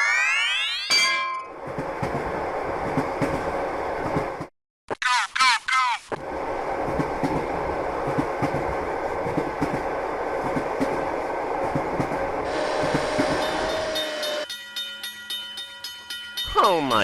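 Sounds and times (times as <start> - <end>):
train wheels clacking on rails: 1.5 - 4.5, 6.8 - 17.0.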